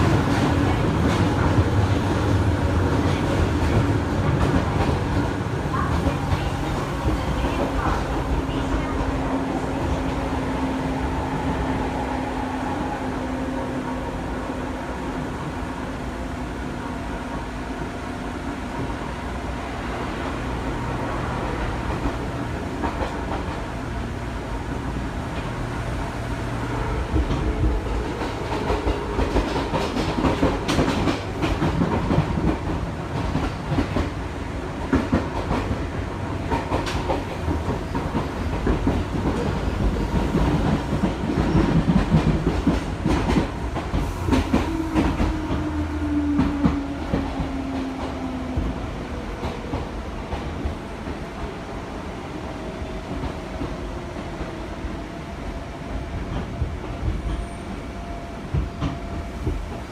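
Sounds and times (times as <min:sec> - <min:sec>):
electric train rumbling: 0:00.0 - 0:59.9.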